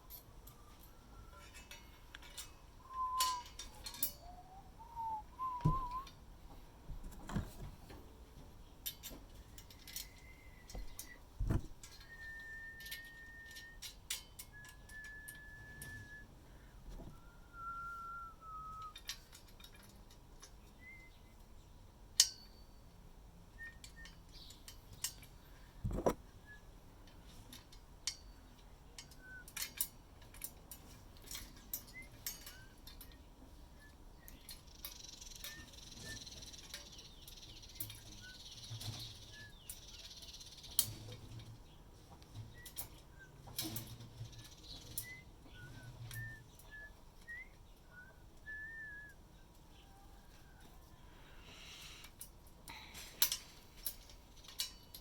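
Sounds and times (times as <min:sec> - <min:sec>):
hands clicking and knocking parts: 0:00.1 - 0:06.2
whistled notes: 0:00.2 - 0:06.2, 0:10.0 - 0:11.2, 0:11.9 - 0:16.4, 0:17.1 - 0:19.1, 0:20.8 - 0:21.3, 0:29.1 - 0:29.6, 0:44.9 - 0:49.2
soft low thuds: 0:10.8 - 0:11.8.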